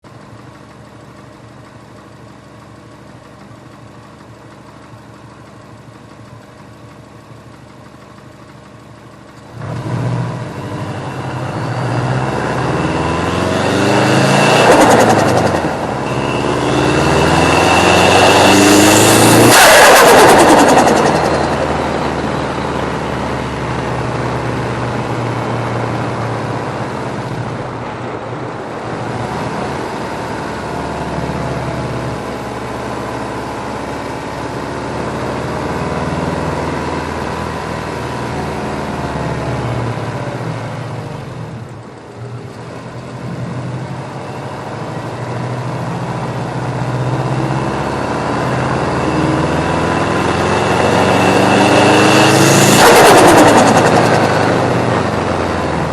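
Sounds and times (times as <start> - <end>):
car engine idling: 0.1 - 9.6.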